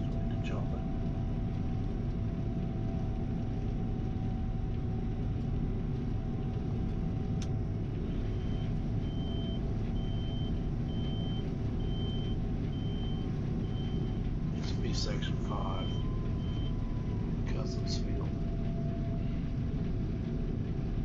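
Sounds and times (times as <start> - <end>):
combine engine droning: 0.0 - 21.0
steady whine: 0.0 - 21.0
backup alarm beeping: 8.2 - 14.2, 15.3 - 17.1.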